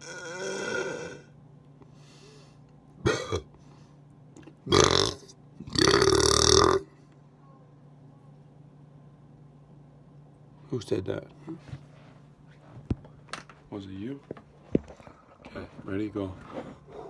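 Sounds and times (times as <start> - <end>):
person burping: 0.0 - 1.3, 3.1 - 3.5, 4.6 - 6.9.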